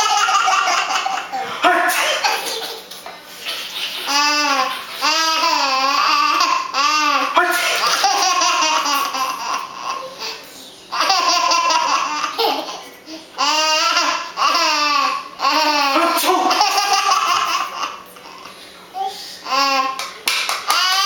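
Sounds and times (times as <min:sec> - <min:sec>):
young child laughing: 0:00.0 - 0:14.8.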